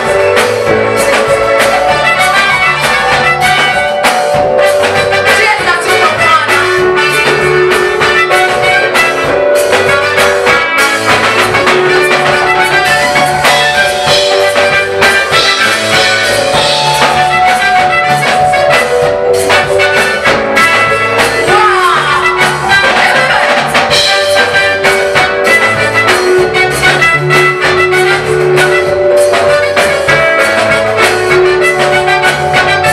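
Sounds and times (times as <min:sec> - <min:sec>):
band music with drums and bass: 0:00.0 - 0:32.9.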